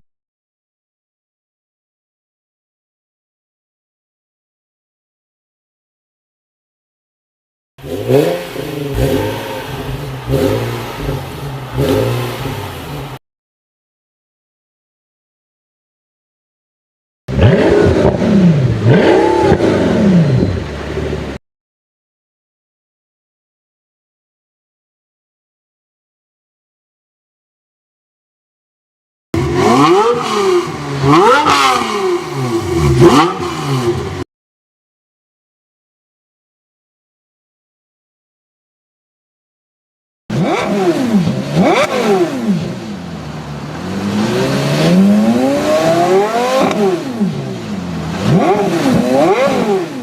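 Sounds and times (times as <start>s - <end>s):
sports car engine revving: 7.8s - 13.2s, 17.3s - 21.4s, 29.4s - 34.2s, 40.3s - 50.0s.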